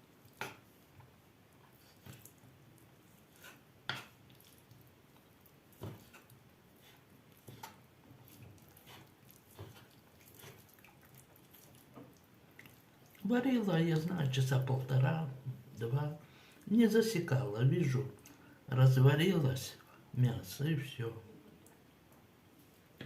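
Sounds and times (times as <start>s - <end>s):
meat squishing: 1.6s - 14.6s.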